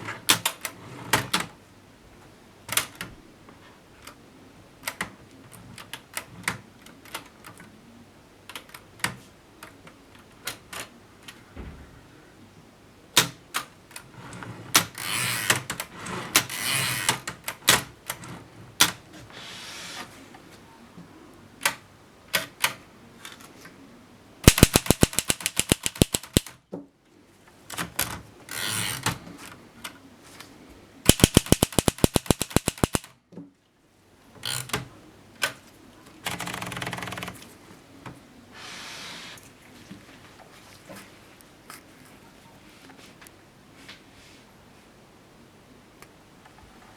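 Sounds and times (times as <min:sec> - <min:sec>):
typewriter key strikes: 0:24.5 - 0:26.5, 0:31.1 - 0:33.0
typewriter mechanism noise: 0:24.5 - 0:26.5, 0:31.1 - 0:33.1.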